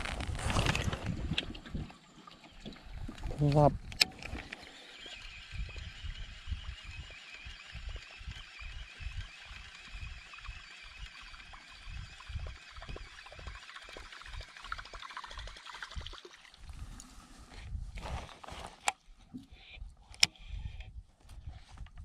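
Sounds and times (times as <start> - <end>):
water lapping against kayak: 0.0 - 5.3, 7.4 - 17.6.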